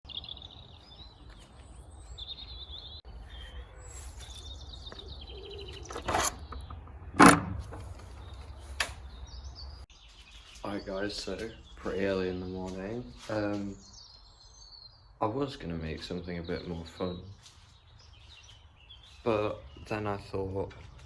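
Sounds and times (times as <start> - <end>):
songbirds chirping: 0.1 - 21.0
sharp knocks: 5.9 - 8.1.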